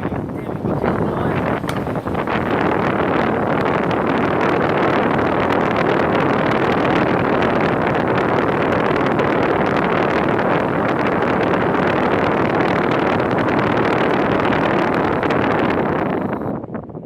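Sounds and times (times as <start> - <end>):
air conditioner unit running: 0.0 - 17.0.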